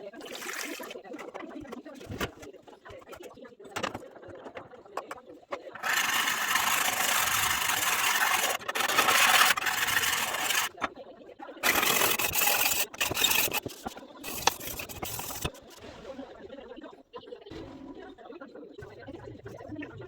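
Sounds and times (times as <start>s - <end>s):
harsh scraping on knife blade: 5.8s - 10.8s, 11.6s - 15.7s.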